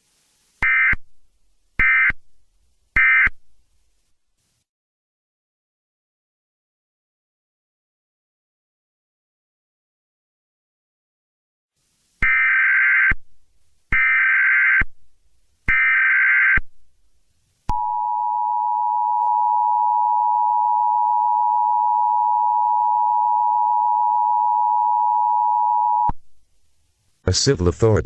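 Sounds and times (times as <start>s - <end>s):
two-tone attention signal: 17.7s - 26.1s.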